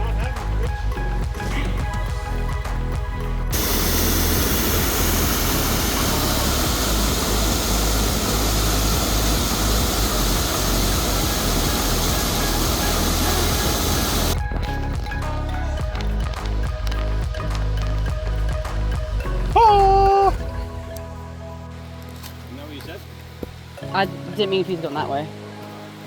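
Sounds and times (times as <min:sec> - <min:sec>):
waterfall roaring: 0:03.6 - 0:14.4.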